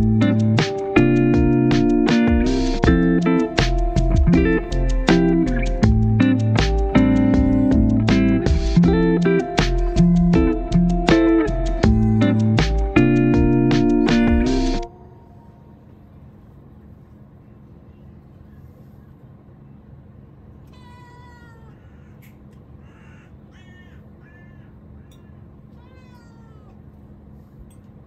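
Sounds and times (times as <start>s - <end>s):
steady low background noise: 0.0s - 28.0s
animal short cries: 20.7s - 26.8s.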